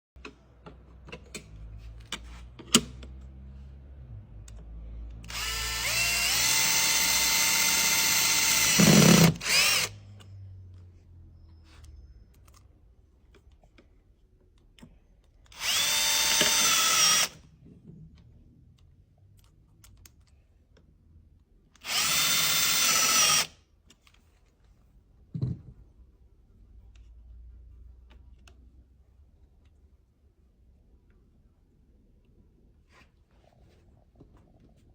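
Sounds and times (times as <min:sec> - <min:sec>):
power drill whine: 0:05.2 - 0:10.0, 0:15.6 - 0:17.4, 0:21.8 - 0:23.5.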